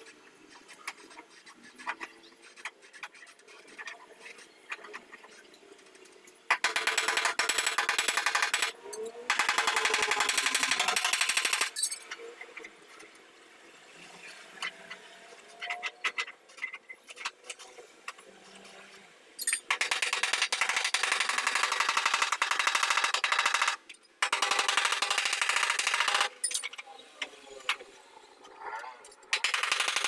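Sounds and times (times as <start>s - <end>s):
power tool rattling on sheet metal: 6.6s - 11.8s, 19.7s - 26.4s, 29.4s - 30.0s.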